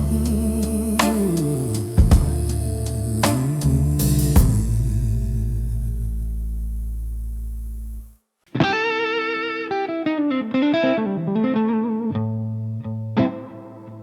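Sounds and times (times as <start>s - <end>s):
held low blues chord: 0.0s - 8.1s
electric guitar slow melody: 0.0s - 14.0s.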